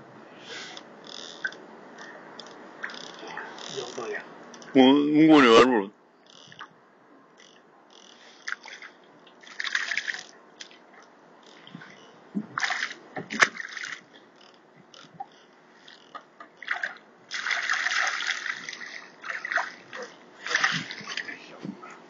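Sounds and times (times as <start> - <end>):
water splashing: 8.4 - 10.9, 12.5 - 14.2, 16.6 - 21.6.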